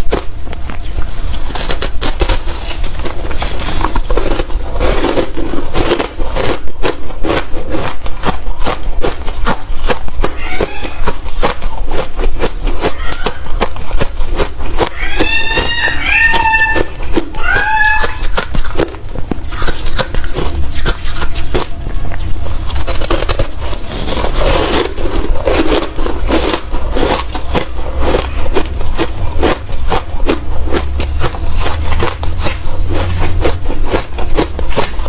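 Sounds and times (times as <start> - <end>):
crushed ice being chewed: 0.0 - 35.0
cat meowing: 10.3 - 11.1, 12.9 - 13.5, 14.9 - 18.3.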